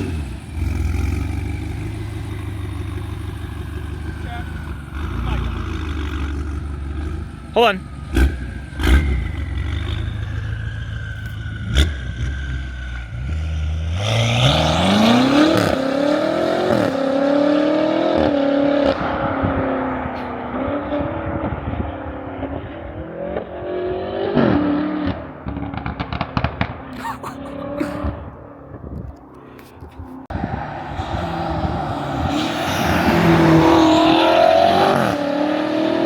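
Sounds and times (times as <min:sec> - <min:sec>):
car engine accelerating: 0:00.0 - 0:26.9, 0:30.0 - 0:36.0
exhaust pops and crackles: 0:24.4 - 0:27.0.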